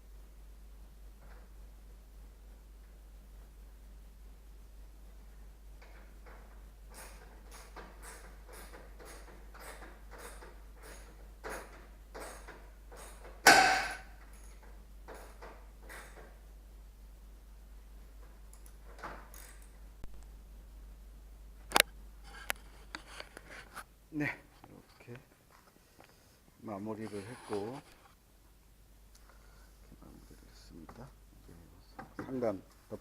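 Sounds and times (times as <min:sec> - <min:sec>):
loud knock: 0:13.4 - 0:14.1.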